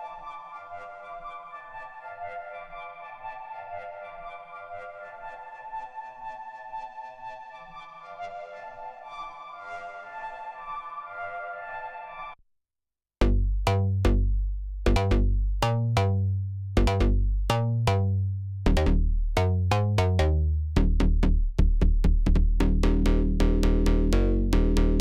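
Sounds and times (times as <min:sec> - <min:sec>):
plucky synthesizer bass notes: 0:13.2 - 0:25.0.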